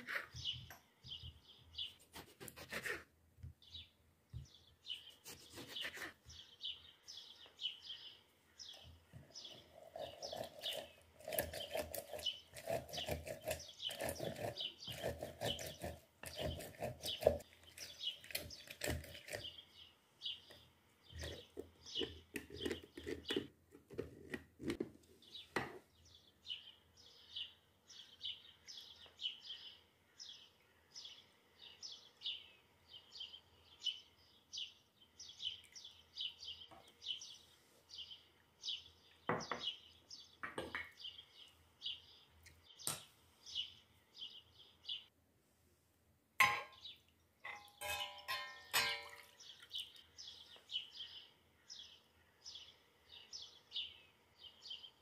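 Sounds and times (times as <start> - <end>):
small bird chirping: 3.6 - 45.1.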